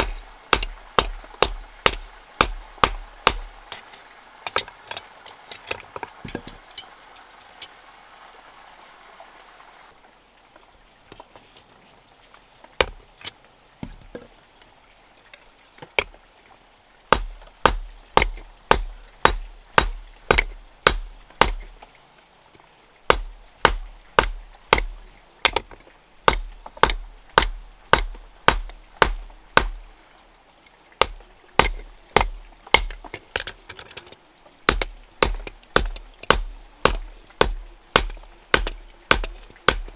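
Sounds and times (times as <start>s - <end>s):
hand hammer strikes: 34.7s - 39.9s.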